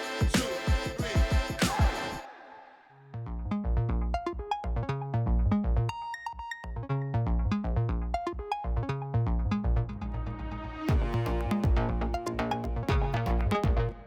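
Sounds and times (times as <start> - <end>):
electronic music with drum-machine beat: 0.0 - 2.2, 10.9 - 14.0.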